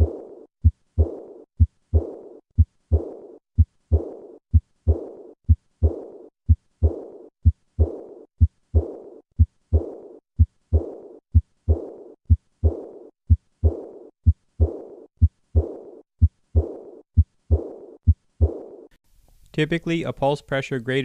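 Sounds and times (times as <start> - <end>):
high-pitched heart murmur: 0.0 - 18.9
heartbeat: 0.0 - 19.0.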